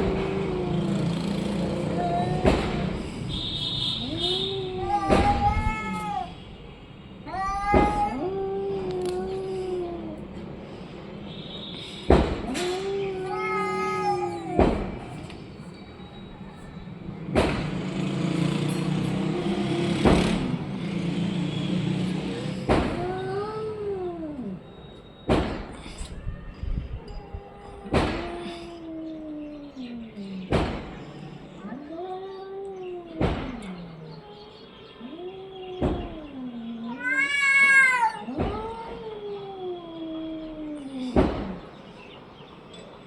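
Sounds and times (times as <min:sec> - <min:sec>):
cat growling: 0:00.0 - 0:03.3, 0:04.0 - 0:06.3, 0:07.3 - 0:10.7, 0:12.4 - 0:15.5, 0:18.4 - 0:20.7, 0:22.4 - 0:24.7, 0:27.0 - 0:41.7
cat meowing: 0:01.7 - 0:02.9, 0:04.0 - 0:06.4, 0:07.2 - 0:10.4, 0:12.4 - 0:15.3, 0:22.8 - 0:24.7, 0:26.1 - 0:30.4, 0:31.2 - 0:41.6.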